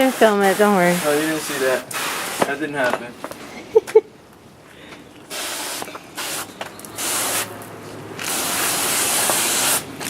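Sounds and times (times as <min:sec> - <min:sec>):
water spraying from hose nozzle: 0:00.0 - 0:02.8, 0:05.3 - 0:10.0.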